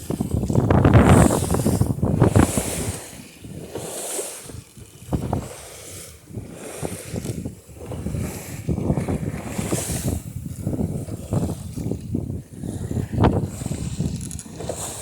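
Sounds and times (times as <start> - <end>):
water splashing against boat hull: 0.0 - 15.0
wind buffeting microphone: 0.0 - 15.0.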